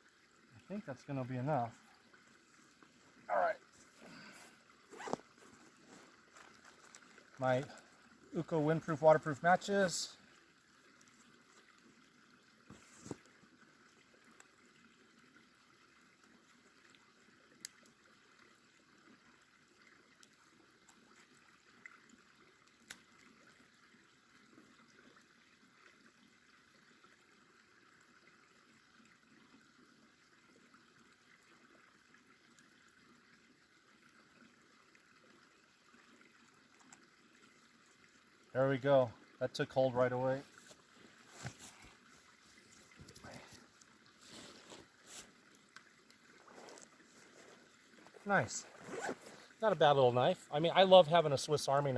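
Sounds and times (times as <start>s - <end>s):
small fire hissing: 40.5s - 49.7s.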